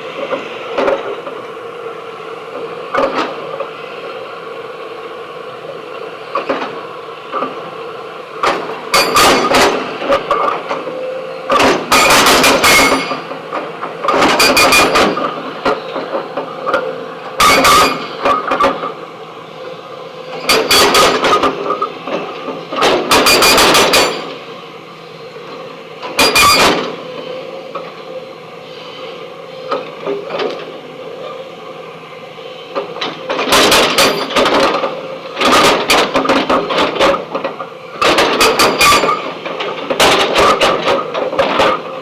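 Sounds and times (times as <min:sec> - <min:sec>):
hydraulic breaker hammering rock: 0:08.4 - 0:10.5, 0:11.5 - 0:15.8, 0:17.4 - 0:18.9, 0:20.4 - 0:24.4, 0:26.2 - 0:27.0, 0:33.3 - 0:41.9.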